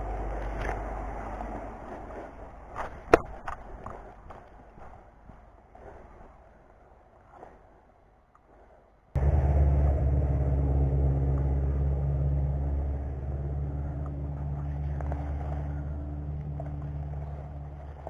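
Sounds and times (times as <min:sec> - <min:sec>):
engine humming: 0:09.2 - 0:18.0.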